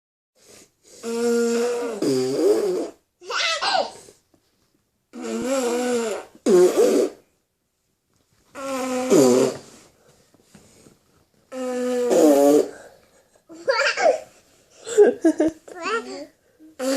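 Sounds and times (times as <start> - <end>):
fart noises: 1.0 - 3.1, 5.1 - 7.3, 8.5 - 9.8, 11.5 - 12.9.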